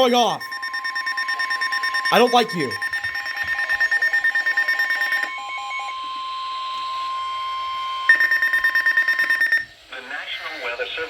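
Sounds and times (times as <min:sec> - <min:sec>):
steady warning alert tone: 0:00.0 - 0:04.2
receiver alarms beeping rapidly: 0:00.0 - 0:05.9, 0:08.1 - 0:09.7.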